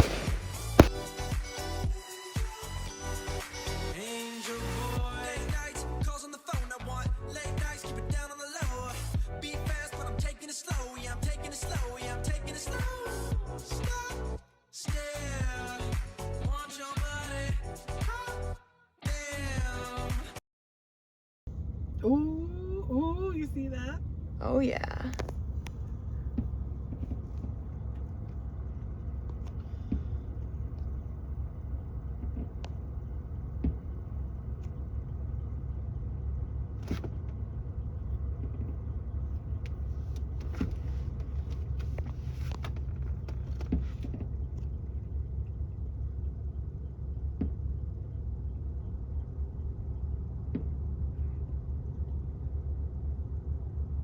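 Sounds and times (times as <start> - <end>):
short sharp pops: 0.0 - 1.4
car low rumble: 0.0 - 1.9, 6.8 - 8.2, 11.0 - 14.4, 21.5 - 54.0.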